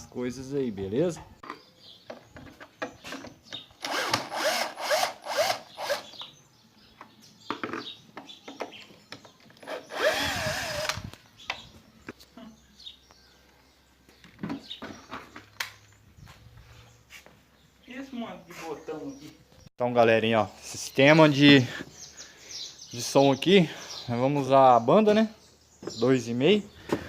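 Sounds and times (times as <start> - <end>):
small power tool motor: 3.8 - 6.2, 9.6 - 11.2.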